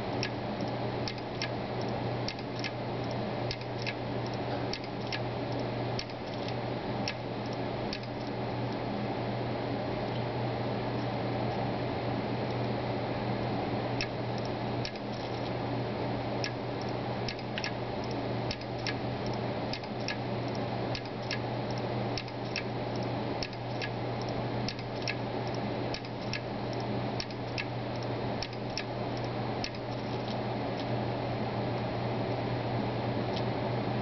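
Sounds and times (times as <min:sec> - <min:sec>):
hard drive clicking: 0:00.0 - 0:08.8, 0:14.0 - 0:15.5, 0:16.4 - 0:30.9.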